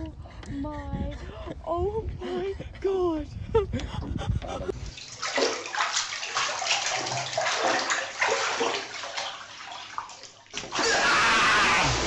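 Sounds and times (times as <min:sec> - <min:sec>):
water splashing and sloshing: 0:04.4 - 0:11.3.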